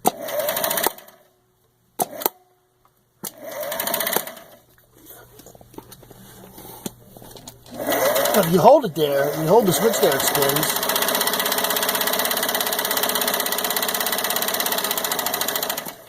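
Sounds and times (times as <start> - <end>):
sewing machine running: 0.0 - 1.3, 3.4 - 4.6, 7.7 - 16.0.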